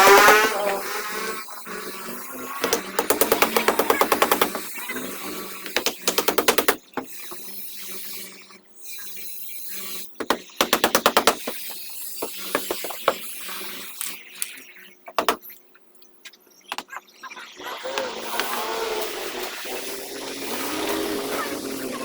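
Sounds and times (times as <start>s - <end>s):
power tool rattling: 0.0s - 1.0s, 2.6s - 4.8s, 17.9s - 22.0s.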